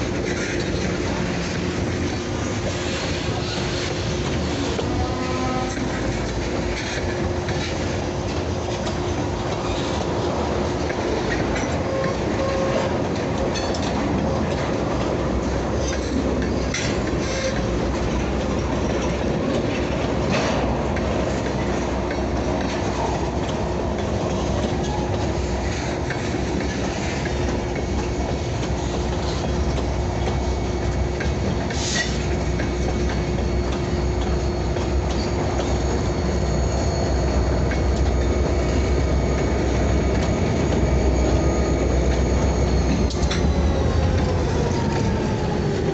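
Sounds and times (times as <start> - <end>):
diesel locomotive engine rumble: 0.0 - 45.9
railcars rolling on track: 0.0 - 45.9
high wheel squeal: 31.8 - 45.9.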